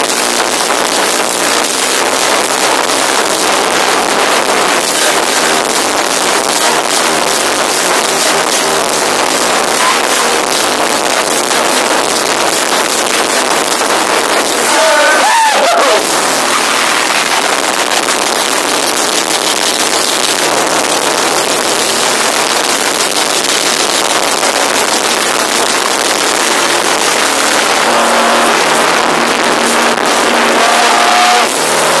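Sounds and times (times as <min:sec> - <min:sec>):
crowd cheering distorted: 0:00.0 - 0:32.0
people shouting: 0:14.6 - 0:16.8, 0:30.3 - 0:32.0.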